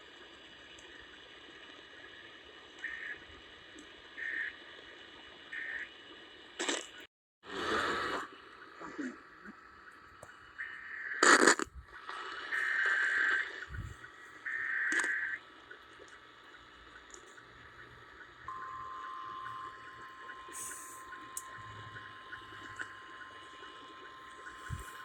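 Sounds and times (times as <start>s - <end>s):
screechy digital header bursts: 18.5s - 25.0s
steady alarm tone: 18.5s - 25.0s.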